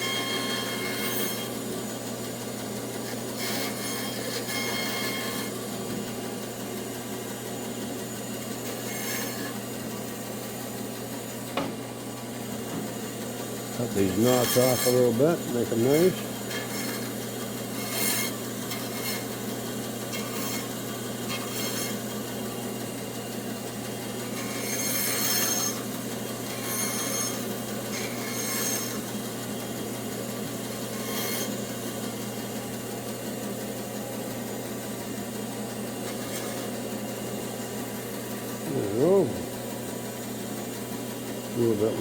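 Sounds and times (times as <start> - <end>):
saw blade cutting wood: 0.0 - 1.6, 2.9 - 5.7, 8.6 - 9.7, 13.7 - 22.7, 24.2 - 29.7, 30.7 - 31.8, 36.0 - 36.9
bandsaw humming: 0.0 - 33.0, 35.7 - 40.1.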